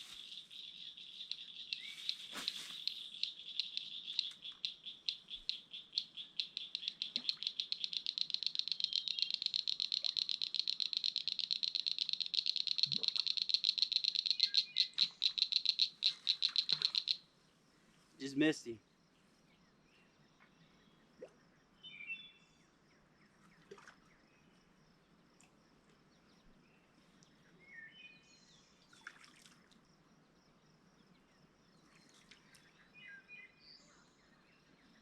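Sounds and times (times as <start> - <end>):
animal clicking calls: 0.0 - 17.2.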